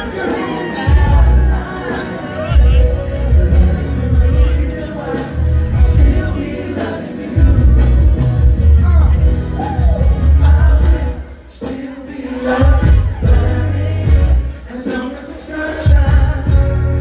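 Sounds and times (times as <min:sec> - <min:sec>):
heavy pulsing bass beat: 0:00.9 - 0:01.6, 0:02.5 - 0:06.7, 0:07.4 - 0:11.2, 0:12.6 - 0:14.6, 0:15.9 - 0:17.0.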